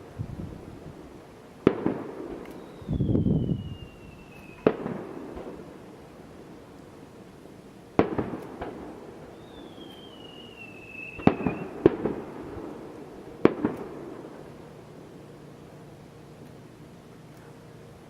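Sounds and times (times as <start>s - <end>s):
fireworks bursting with crackle: 0.0s - 18.0s
falling whistle: 2.5s - 4.8s, 9.3s - 11.8s.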